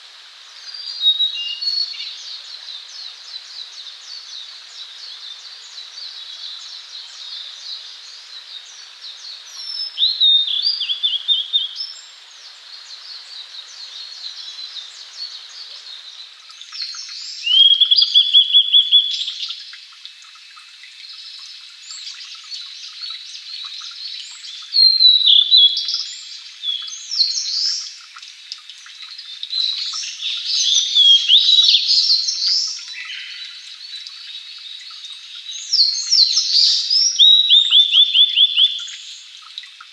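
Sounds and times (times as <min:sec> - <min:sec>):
bird singing whistled notes: 0:00.7 - 0:02.4, 0:08.7 - 0:12.1, 0:16.8 - 0:19.6, 0:23.0 - 0:28.0, 0:29.2 - 0:34.4, 0:35.1 - 0:39.3.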